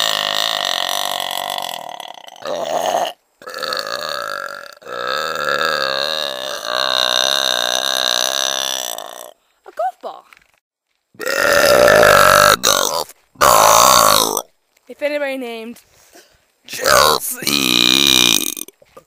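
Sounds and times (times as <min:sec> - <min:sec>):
girl burping: 0:00.0 - 0:09.3, 0:16.8 - 0:18.7.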